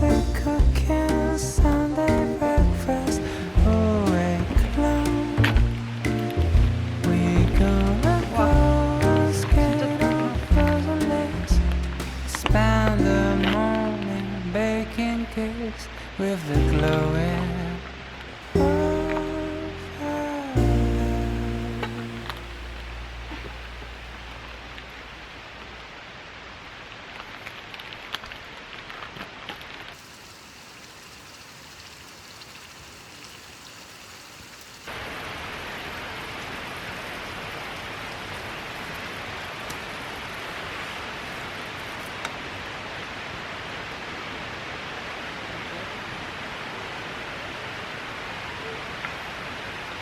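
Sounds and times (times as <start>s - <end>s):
steady hiss: 0.0s - 13.2s, 30.0s - 35.1s.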